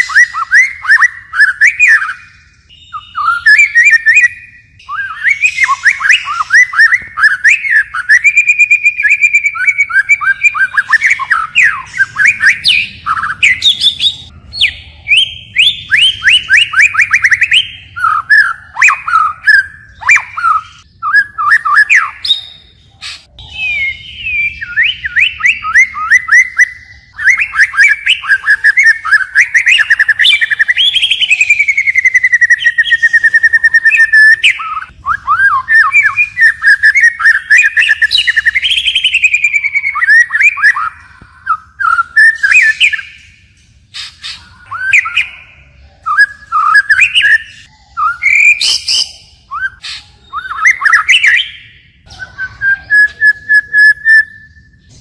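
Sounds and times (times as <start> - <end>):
bird singing varied song: 0.0 - 55.0.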